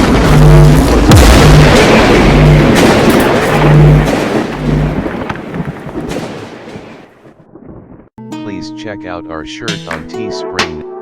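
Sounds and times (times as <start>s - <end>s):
dense rumbling noisy music: 0.0s - 5.2s
heavy hits: 0.0s - 6.5s.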